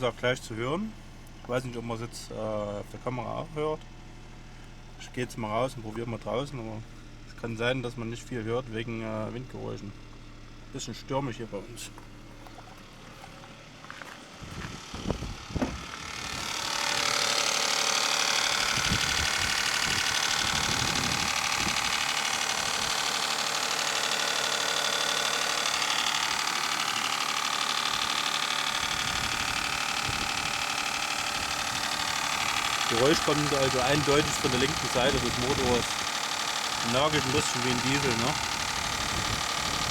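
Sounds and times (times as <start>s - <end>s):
car engine idling with clatter: 0.0s - 39.9s
thumps: 14.4s - 16.4s.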